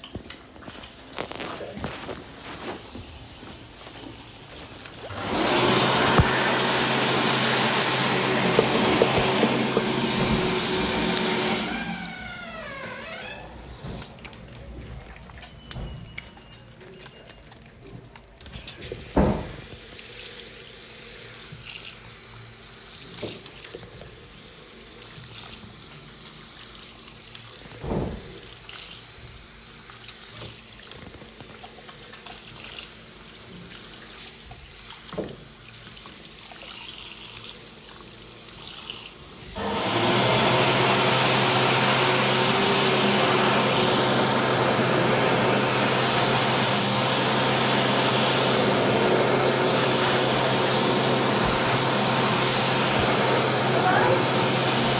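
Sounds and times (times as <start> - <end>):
electric hand dryer running: 5.0 - 13.6, 39.4 - 54.9.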